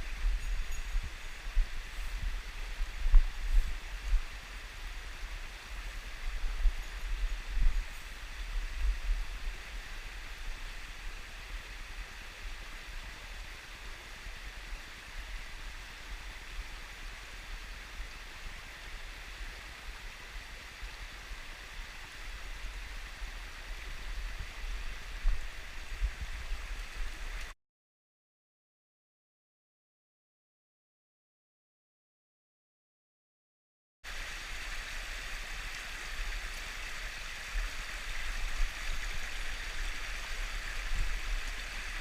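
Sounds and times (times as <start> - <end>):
low rumble on microphone: 0.0 - 11.6, 22.4 - 27.5
mountain stream rushing: 0.0 - 27.6, 34.1 - 42.0.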